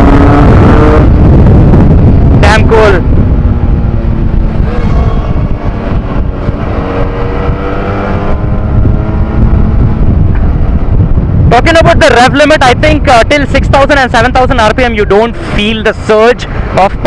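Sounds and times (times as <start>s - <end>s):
motorcycle engine running: 0.0s - 11.6s
wind rumble on microphone: 0.0s - 17.0s.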